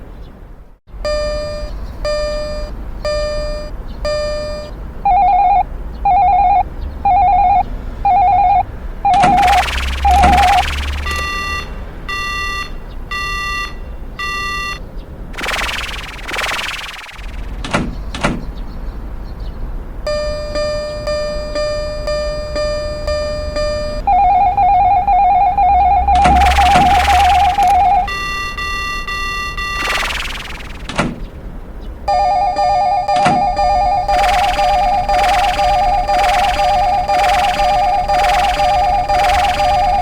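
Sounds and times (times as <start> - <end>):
steady electronic tone: 3.2 - 12.6, 15.4 - 17.6, 22.1 - 31.0, 32.1 - 40.0
telephone ring trilling: 4.2 - 11.6, 24.1 - 30.7, 32.1 - 40.0
electronic pitched tone: 4.2 - 11.8, 15.4 - 17.6, 24.1 - 28.6, 29.6 - 31.0, 32.1 - 40.0.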